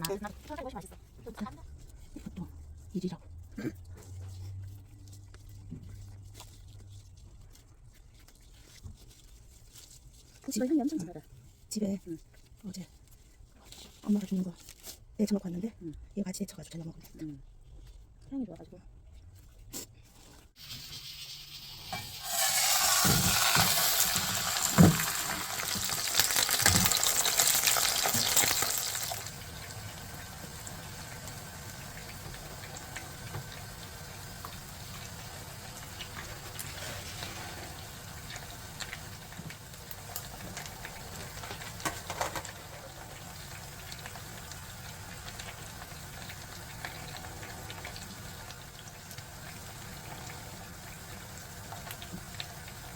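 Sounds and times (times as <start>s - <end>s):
water running from a tap: 20.6s - 52.9s.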